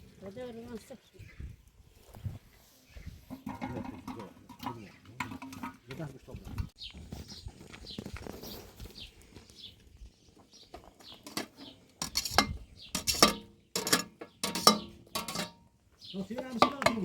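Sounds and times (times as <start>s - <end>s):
metal pots and utensils clanking: 3.3s - 6.7s, 11.2s - 17.0s.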